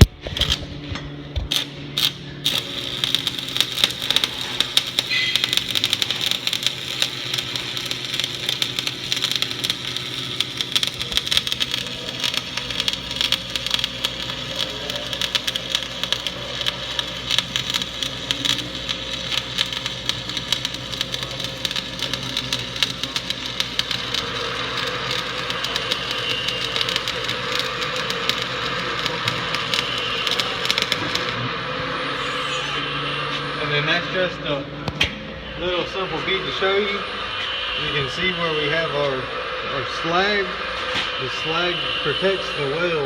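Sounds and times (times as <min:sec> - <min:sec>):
welding arc crackling: 0:00.0 - 0:00.8, 0:01.4 - 0:32.9
low hum: 0:00.0 - 0:42.9.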